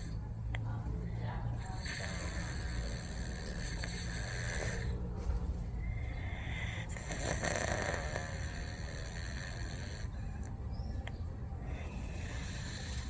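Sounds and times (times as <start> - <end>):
cat snoring: 1.6 - 5.1, 6.2 - 10.5, 11.7 - 13.0.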